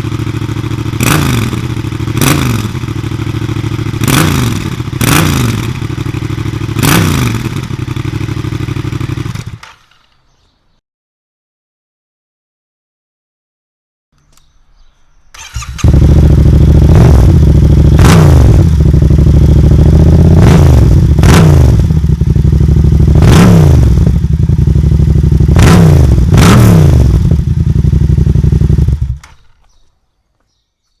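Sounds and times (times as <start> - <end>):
motorcycle engine revving: 0.0 - 9.9, 15.4 - 29.6.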